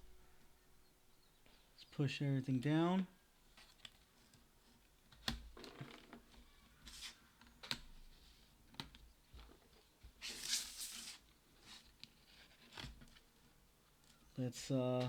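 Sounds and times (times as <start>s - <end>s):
short rustle: 10.2s - 12.8s.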